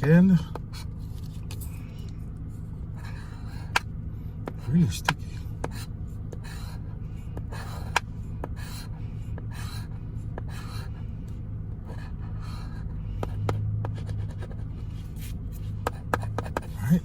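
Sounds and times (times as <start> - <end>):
steady low hum: 0.0 - 17.0
scratching lottery ticket: 13.9 - 16.9.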